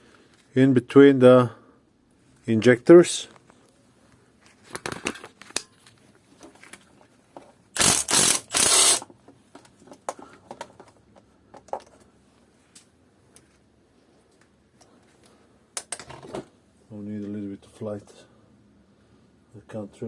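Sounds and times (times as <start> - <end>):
ratchet wrench clicking: 7.8 - 9.1.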